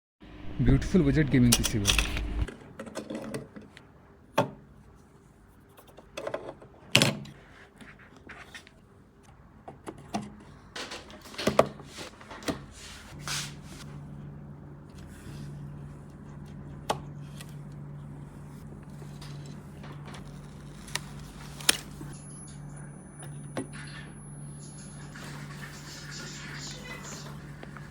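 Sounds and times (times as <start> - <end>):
low steady hum: 0.2 - 2.5, 13.2 - 27.9
computer parts clicking and rubbing: 1.4 - 3.5.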